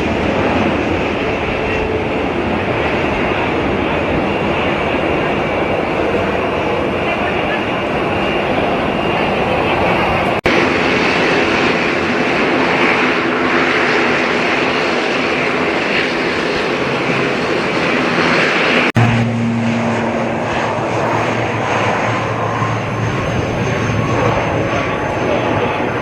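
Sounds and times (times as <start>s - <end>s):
airliner engines rushing: 0.0s - 26.0s
steady low hum: 19.0s - 26.0s.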